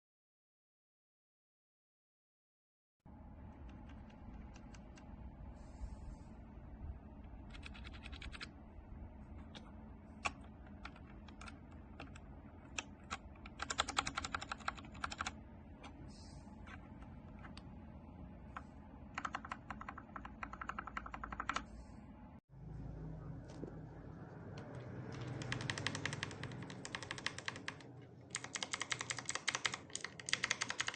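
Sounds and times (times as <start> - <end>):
mechanical keyboard typing: 7.4 - 8.5, 9.4 - 16.0, 19.1 - 21.7, 24.6 - 30.9.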